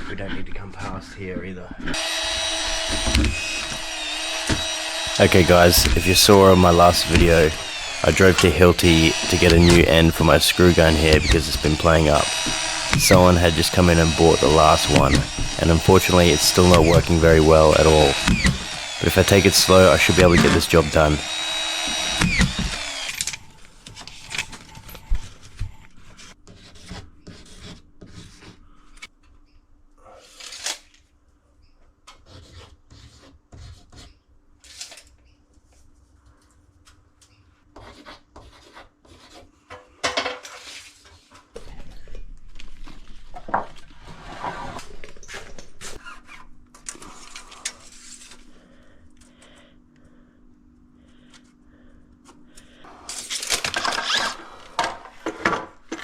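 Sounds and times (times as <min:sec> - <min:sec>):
scraping and rubbing on plasterboard: 0:26.0 - 0:28.7, 0:32.1 - 0:35.0, 0:37.8 - 0:41.5.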